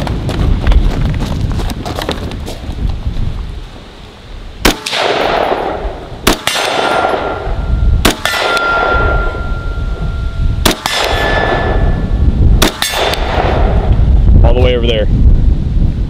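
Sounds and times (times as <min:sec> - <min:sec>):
gunshots: 0:04.6 - 0:09.4, 0:10.6 - 0:11.9, 0:12.6 - 0:13.9
steel plates ringing: 0:06.8 - 0:12.1.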